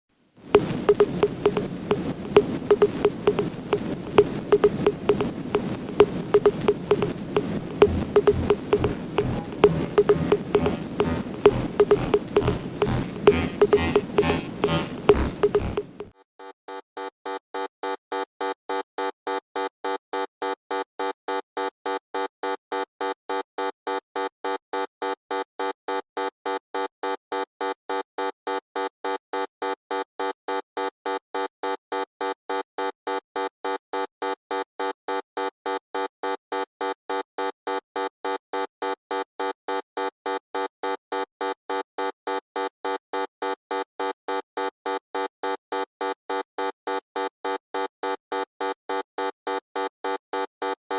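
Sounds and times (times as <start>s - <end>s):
electronic buzzer beeping: 7.7s - 16.1s.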